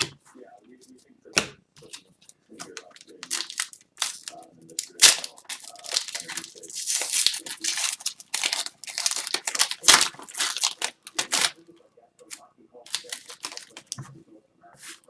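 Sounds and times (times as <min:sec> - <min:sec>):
foil wrappers tearing and crinkling: 0:02.6 - 0:11.6, 0:12.9 - 0:14.0.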